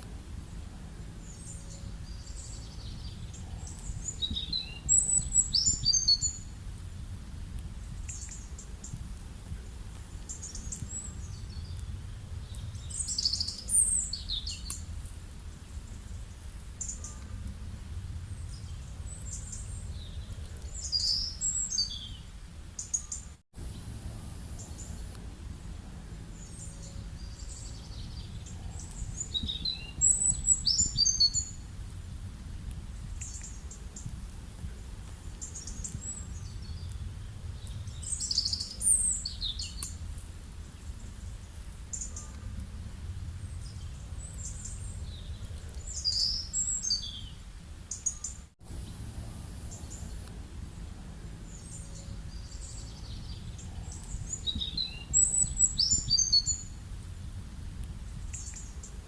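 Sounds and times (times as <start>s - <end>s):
small birds chirping: 0.0s - 57.0s, 57.8s - 59.0s
low background rumble: 0.0s - 59.0s.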